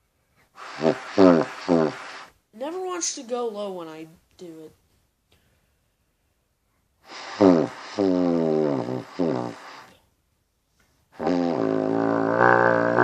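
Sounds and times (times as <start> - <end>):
trumpet buzzing low notes: 11.2 - 13.0.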